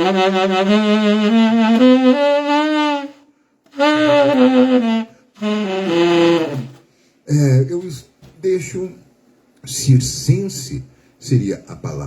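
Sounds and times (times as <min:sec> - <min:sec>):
saxophone playing comic phrase: 0:00.0 - 0:06.8.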